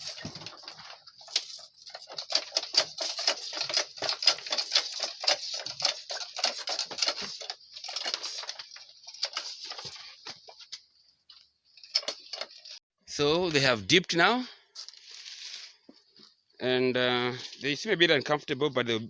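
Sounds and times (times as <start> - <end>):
goats pattering and clattering: 0.0 - 12.8.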